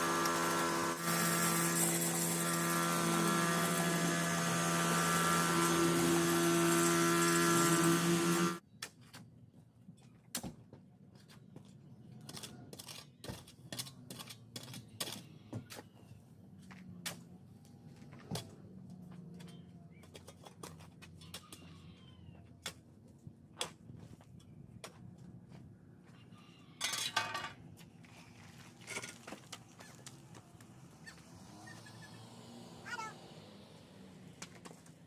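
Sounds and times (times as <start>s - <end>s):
tiller engine running: 0.0s - 8.6s.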